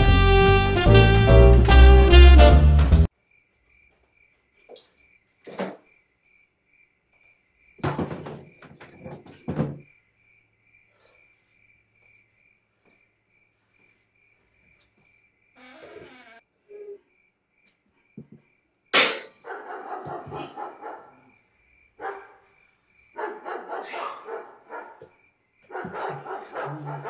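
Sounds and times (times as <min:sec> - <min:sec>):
cricket chirping: 0:03.1 - 0:27.0.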